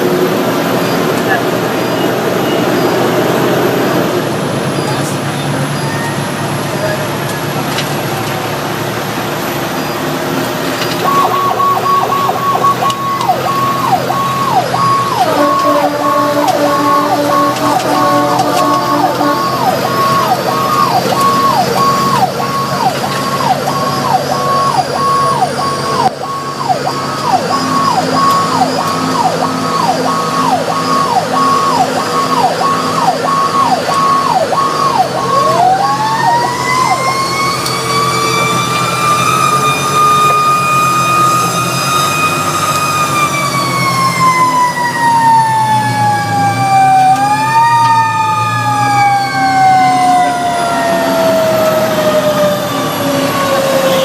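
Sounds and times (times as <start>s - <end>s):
deep siren wailing: 0.0s - 54.0s
fire truck engine: 0.0s - 54.0s
siren with quick falling sweeps: 10.9s - 54.0s.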